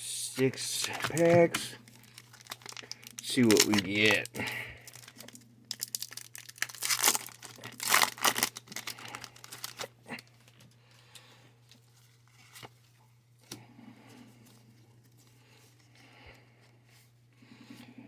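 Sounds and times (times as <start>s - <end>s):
foil pack tearing and crinkling: 0.7s - 10.5s.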